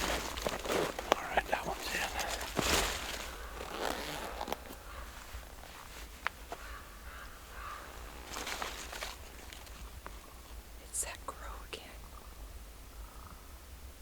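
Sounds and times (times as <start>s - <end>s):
rustling and handling noise: 0.0s - 10.7s.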